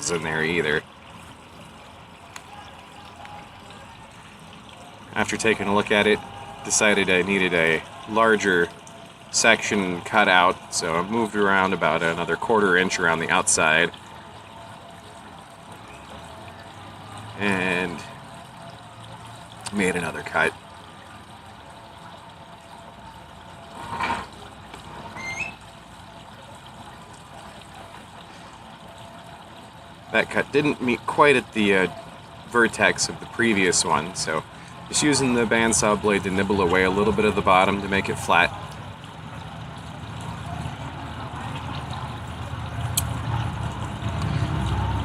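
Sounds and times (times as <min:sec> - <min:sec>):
short rising squeak: 0:25.0 - 0:25.6.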